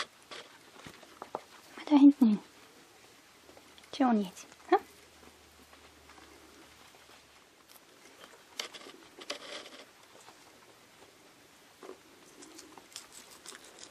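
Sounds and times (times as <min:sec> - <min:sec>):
small feet pattering: 0:05.0 - 0:10.8.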